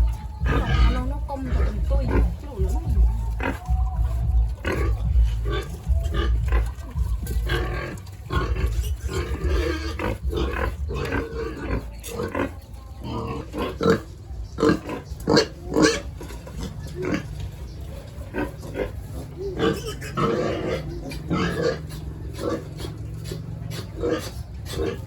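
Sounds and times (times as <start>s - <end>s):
low rumble: 0.0s - 15.3s
pigs grunting: 0.0s - 25.0s.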